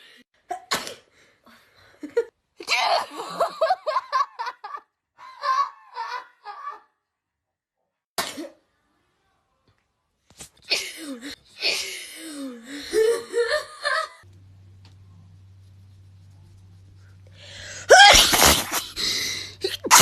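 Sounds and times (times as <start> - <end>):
laughter: 2.0 - 7.0, 12.7 - 14.2
women sneezing: 17.8 - 19.0, 19.6 - 20.0.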